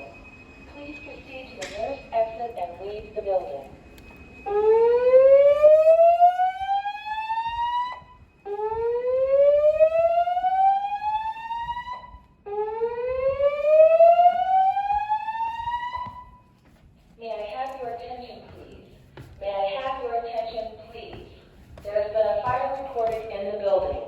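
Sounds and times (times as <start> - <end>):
fire alarm whoop tone: 0.0 - 1.9, 2.9 - 16.4.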